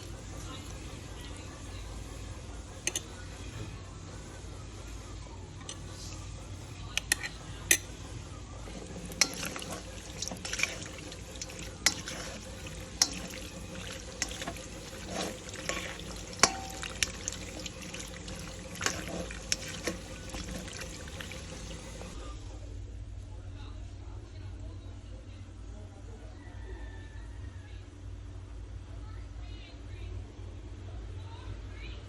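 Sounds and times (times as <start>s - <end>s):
utensils clinking on cookware: 2.8s - 3.2s, 7.0s - 8.0s, 8.7s - 22.2s.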